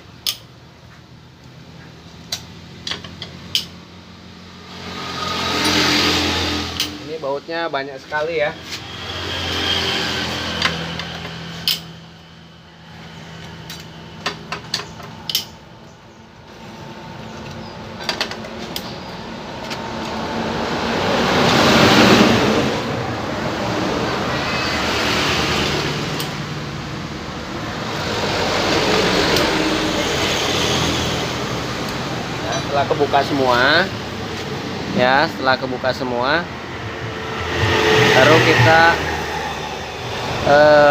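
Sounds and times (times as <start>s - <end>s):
rushing mechanical noise: 4.6s - 15.4s, 16.5s - 40.9s.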